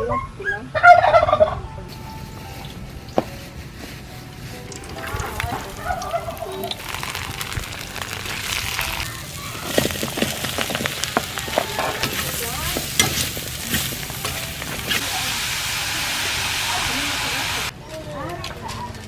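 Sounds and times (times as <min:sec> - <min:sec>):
food sizzling in a pan: 0:01.9 - 0:17.7
utensil scraping a pan: 0:02.3 - 0:15.2.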